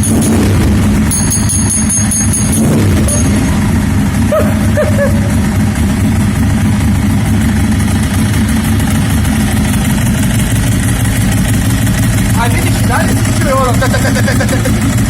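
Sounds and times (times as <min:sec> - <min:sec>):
car engine idling with knock: 0:00.0 - 0:15.0.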